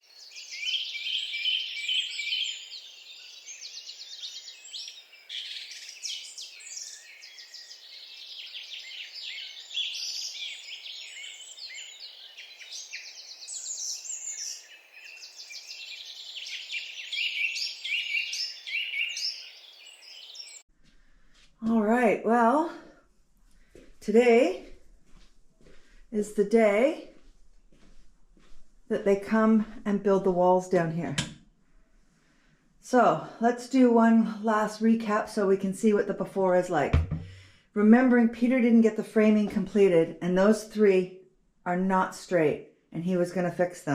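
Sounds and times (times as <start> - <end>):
birds singing and chirping: 0.0 - 20.6.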